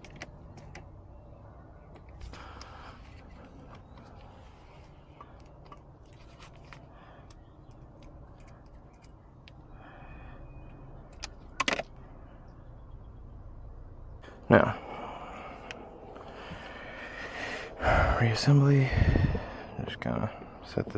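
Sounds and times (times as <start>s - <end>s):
light clicks and scrapes of parts: 1.9s - 9.6s.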